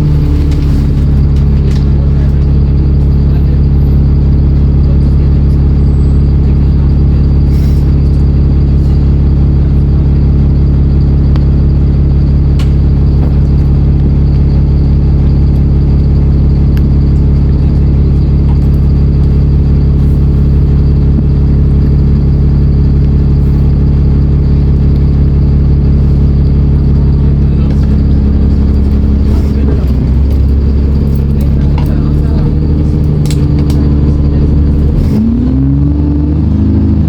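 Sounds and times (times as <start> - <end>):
bus engine droning: 0.0 - 37.0.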